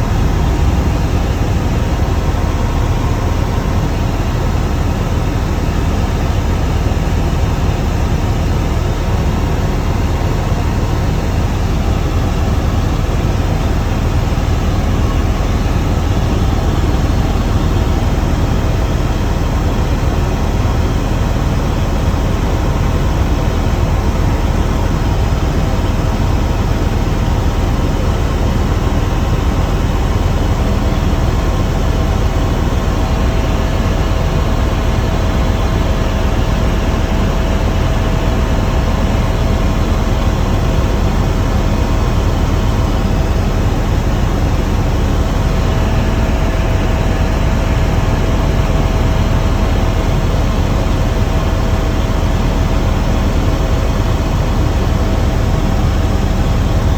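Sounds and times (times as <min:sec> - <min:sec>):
faint steady whine: 0:00.0 - 0:56.9
helicopter rotor and engine drone: 0:00.0 - 0:56.9.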